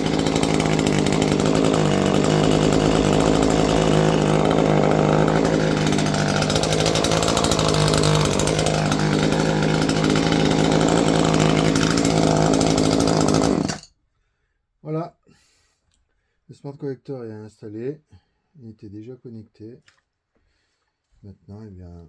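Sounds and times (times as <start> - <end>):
chainsaw engine running steadily: 0.0 - 13.9.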